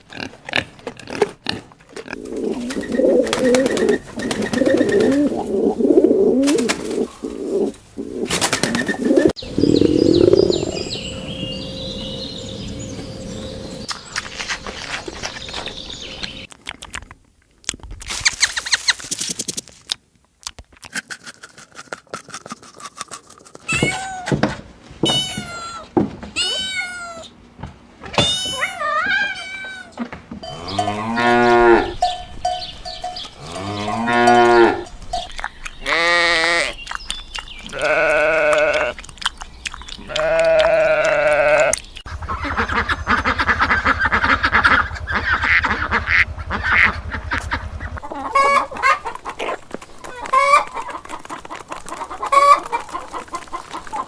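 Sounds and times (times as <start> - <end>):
sheep and goats bleating: 30.4 - 32.1, 33.3 - 34.9, 35.8 - 36.8, 37.6 - 39.0, 40.0 - 41.8.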